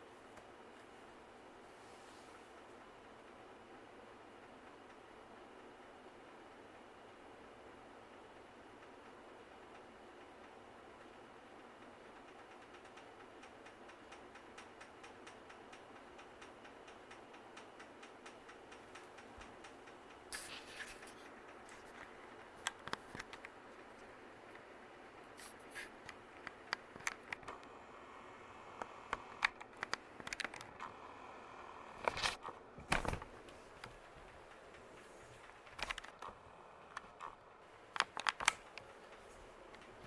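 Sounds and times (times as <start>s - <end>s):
ceiling fan whirring: 0.0s - 40.0s
sharp clicks and scrapes: 17.1s - 24.1s, 28.8s - 31.0s.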